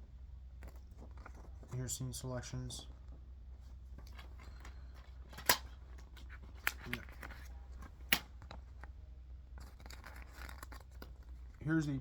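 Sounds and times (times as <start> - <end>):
paper rustling: 4.0 - 8.9, 9.6 - 11.6.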